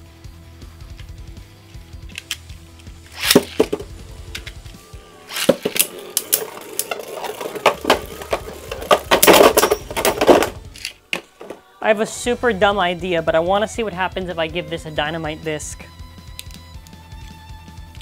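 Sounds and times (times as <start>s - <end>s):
spinning tops clashing: 3.1s - 4.6s, 5.3s - 10.9s.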